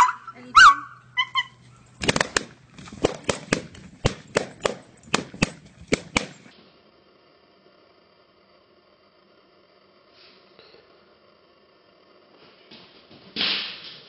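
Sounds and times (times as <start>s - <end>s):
sharp pops: 2.0s - 6.5s.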